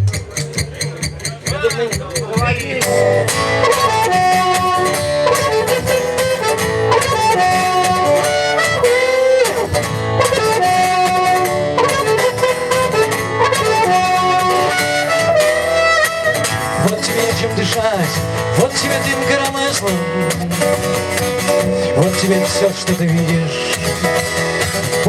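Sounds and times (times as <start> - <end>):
acoustic guitar strumming: 0.0 - 25.0
lead melody of held notes: 2.8 - 17.6.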